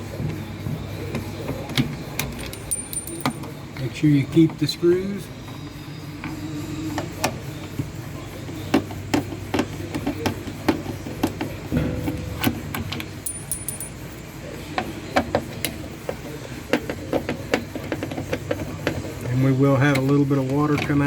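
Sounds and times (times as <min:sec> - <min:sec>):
steady low hum: 0:11.7 - 0:14.8.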